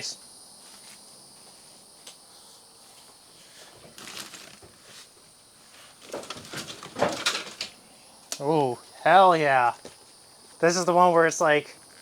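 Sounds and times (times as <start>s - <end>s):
rustling and handling of boxes: 3.4s - 7.8s.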